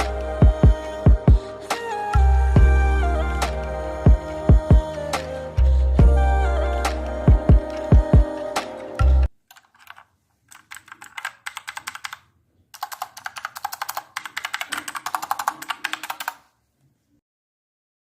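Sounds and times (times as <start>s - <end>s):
background music: 0.0s - 9.3s
mechanical keyboard typing: 9.5s - 16.4s.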